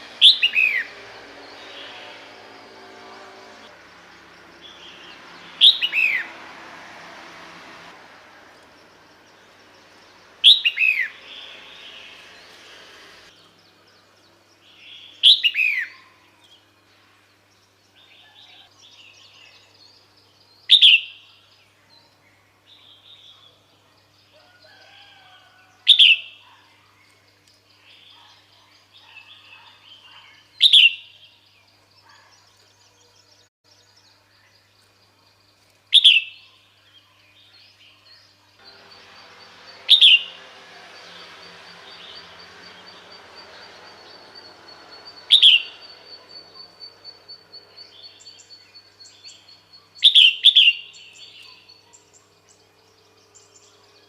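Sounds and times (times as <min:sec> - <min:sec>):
bird calling with sliding note: 0:00.0 - 0:03.7, 0:04.6 - 0:06.4, 0:09.4 - 0:13.4, 0:38.6 - 0:49.4
faint bird chirps: 0:13.3 - 0:54.0.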